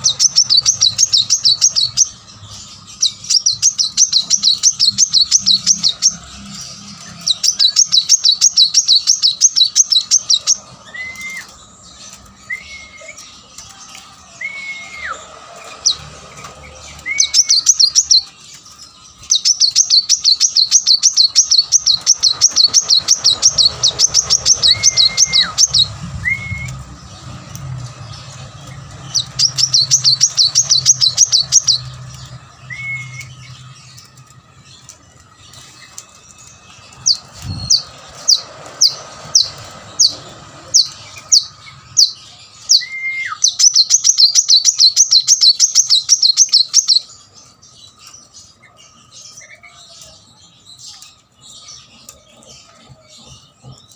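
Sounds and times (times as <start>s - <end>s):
sharp down-slurred bird notes: 14.3s - 47.2s.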